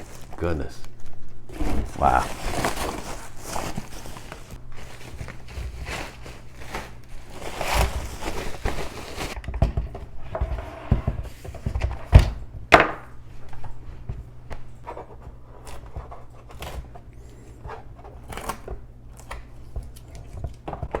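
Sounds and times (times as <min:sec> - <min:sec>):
packaging rustling: 0:00.0 - 0:09.4.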